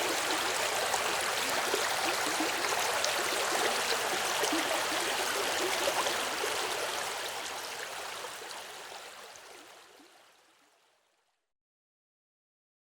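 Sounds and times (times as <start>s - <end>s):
river burbling over stones: 0.0s - 8.6s.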